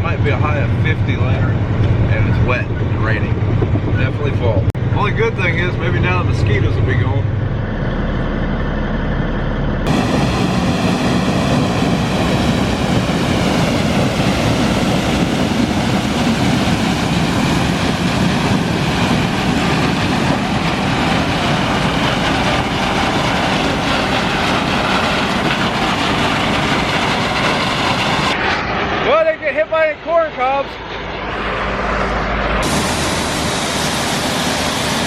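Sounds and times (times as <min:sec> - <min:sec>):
combine harvester clatter: 0:09.8 - 0:29.0
faint rising whine: 0:27.3 - 0:35.0.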